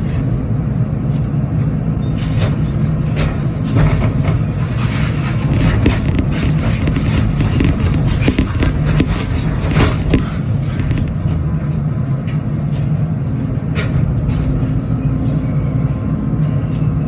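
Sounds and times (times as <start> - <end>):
diesel engine running: 0.0 - 17.0
sharp knocks and clatters: 2.1 - 13.0.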